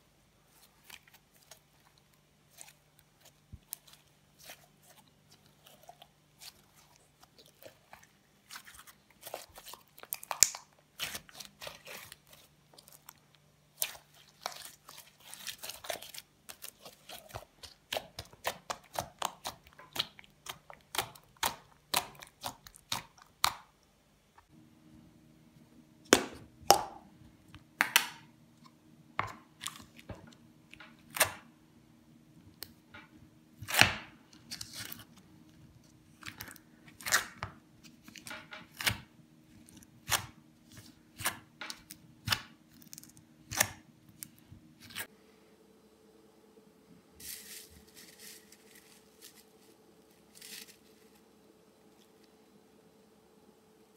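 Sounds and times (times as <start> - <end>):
slime crackling and crunching: 0.6 - 23.6.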